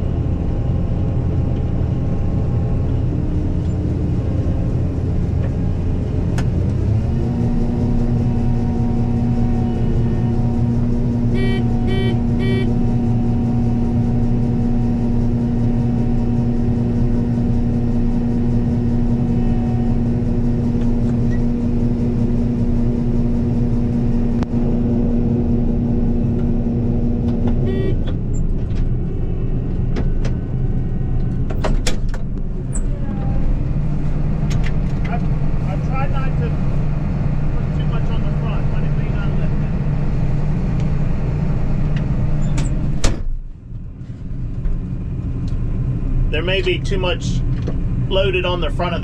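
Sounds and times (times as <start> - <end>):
combine harvester droning: 0.0 - 43.0
electronic warning beeps: 11.4 - 12.7.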